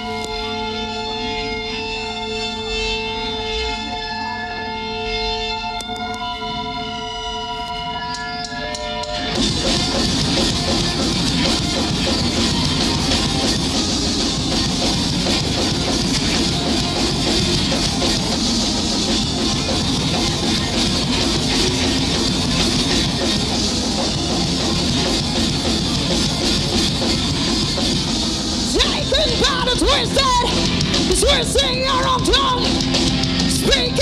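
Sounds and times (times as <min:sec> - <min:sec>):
heavy rock band playing: 0:08.3 - 0:34.0.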